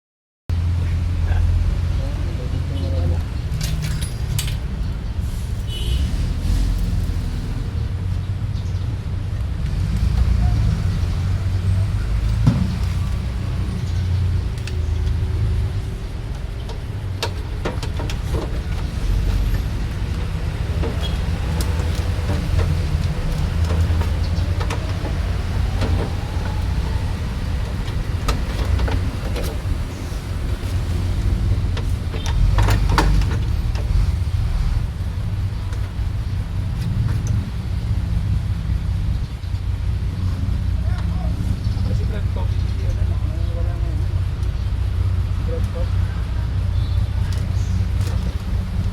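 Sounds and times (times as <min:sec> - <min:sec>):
car engine idling: 0:10.1 - 0:38.8
sharp clicks and knocks: 0:12.2 - 0:34.3.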